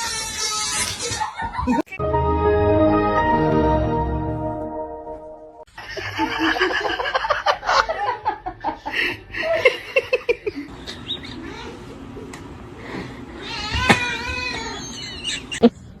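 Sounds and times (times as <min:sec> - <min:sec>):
people laughing: 0:01.0 - 0:02.0, 0:05.8 - 0:11.0, 0:14.8 - 0:15.7
background music: 0:02.0 - 0:05.7.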